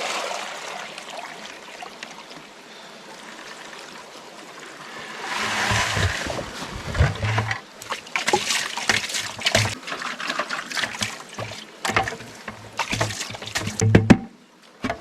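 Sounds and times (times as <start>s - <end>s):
water sloshing and splashing: 0.0s - 2.5s, 3.2s - 15.0s
knocks and clatters: 5.4s - 15.0s.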